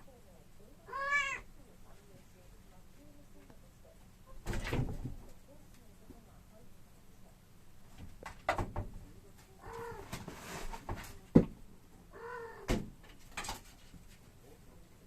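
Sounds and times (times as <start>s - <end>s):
kitten meowing: 0.9s - 1.4s
sharp knocks and thumps: 8.0s - 9.0s.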